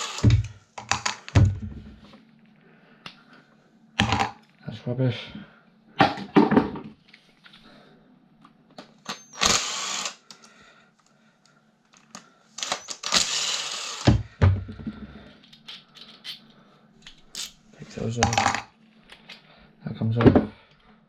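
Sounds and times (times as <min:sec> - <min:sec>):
small parts clicking and clattering: 0:00.0 - 0:01.4, 0:11.9 - 0:14.1, 0:15.3 - 0:17.6.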